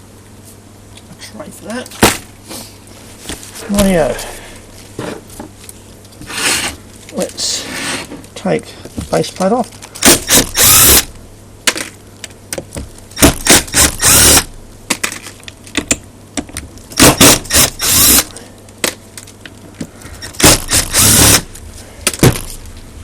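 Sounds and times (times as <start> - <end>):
power screwdriver running: 10.0 - 11.1, 13.2 - 14.5, 17.0 - 18.3, 20.2 - 21.5.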